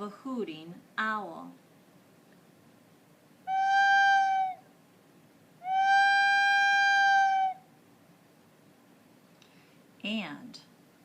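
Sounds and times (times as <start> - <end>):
owl hoot on instrument: 3.5 - 4.6, 5.6 - 7.7.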